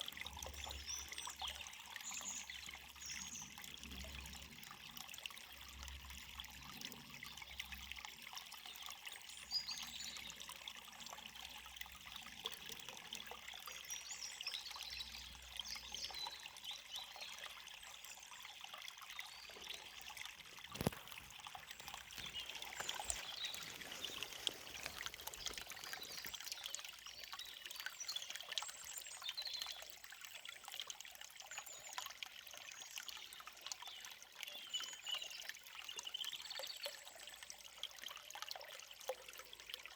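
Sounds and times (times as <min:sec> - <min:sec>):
river flowing: 0:19.3 - 0:27.9
birds chirping: 0:21.7 - 0:26.6.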